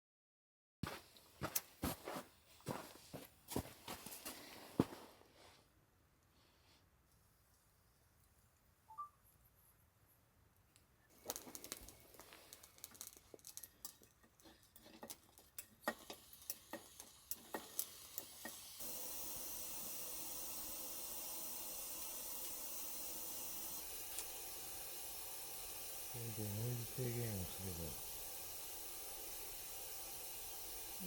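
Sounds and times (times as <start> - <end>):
pressure stove burner hissing: 11.1 - 13.7, 15.5 - 31.0.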